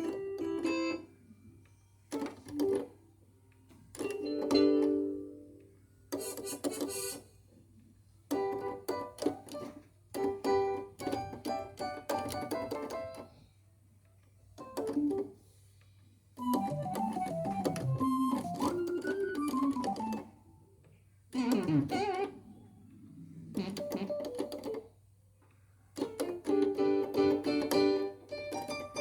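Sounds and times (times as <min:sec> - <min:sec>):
keyboard chords and notes: 0:16.4 - 0:20.4, 0:26.2 - 0:29.0.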